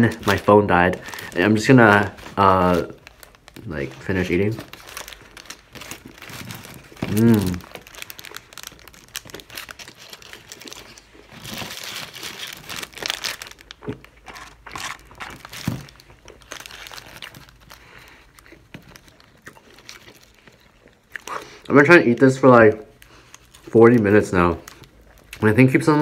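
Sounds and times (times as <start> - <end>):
paper packaging crinkling: 0.0 - 26.0.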